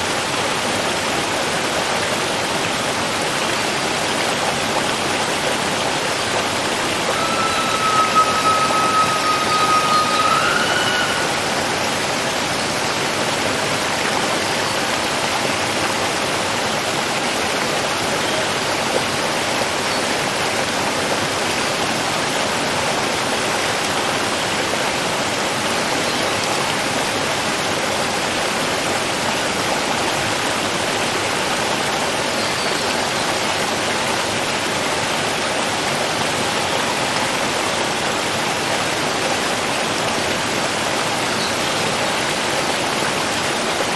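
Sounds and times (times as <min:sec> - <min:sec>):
water rushing: 0:00.2 - 0:17.5.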